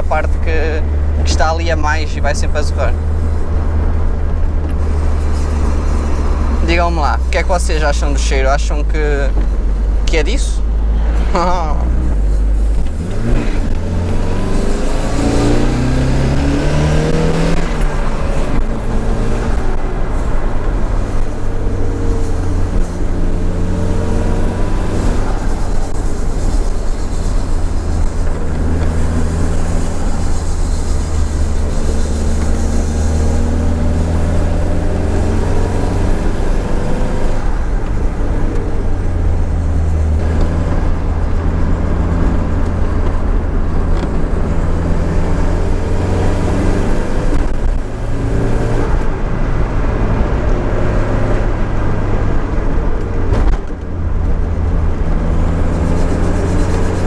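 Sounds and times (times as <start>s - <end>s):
turbo car engine revving: 0.0s - 57.0s.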